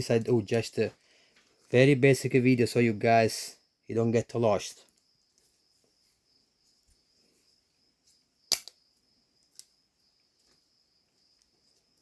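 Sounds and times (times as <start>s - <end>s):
faint high-pitched hiss: 0.0s - 12.0s
sharp metallic click: 8.5s - 8.8s.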